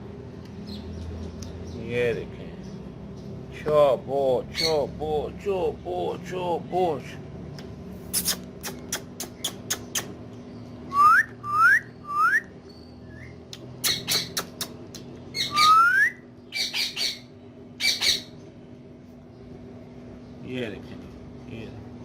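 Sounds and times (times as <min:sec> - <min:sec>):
parrot squawking: 0:04.5 - 0:04.9, 0:13.8 - 0:18.4
parrot rising whistles: 0:10.9 - 0:12.5, 0:15.4 - 0:16.2.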